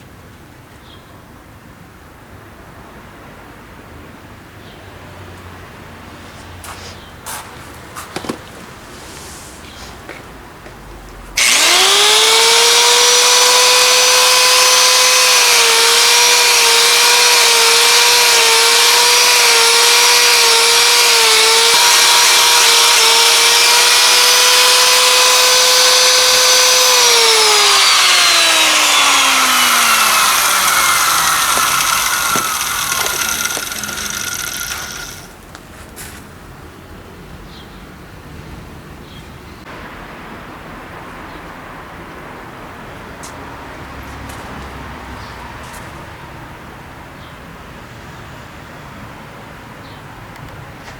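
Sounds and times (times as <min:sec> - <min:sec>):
power tool motor whining: 0:11.4 - 0:35.4.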